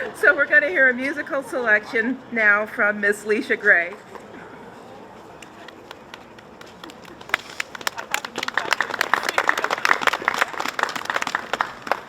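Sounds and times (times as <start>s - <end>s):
audience applauding: 5.4s - 12.0s.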